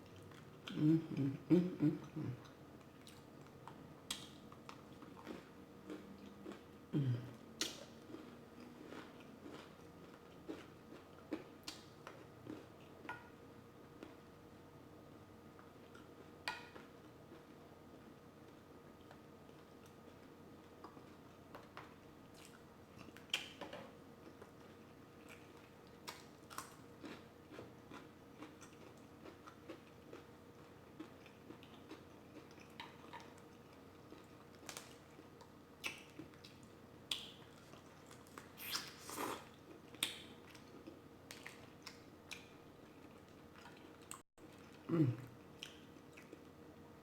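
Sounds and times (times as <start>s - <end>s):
quiet chewing and biting: 2.1s - 13.3s, 24.2s - 46.6s.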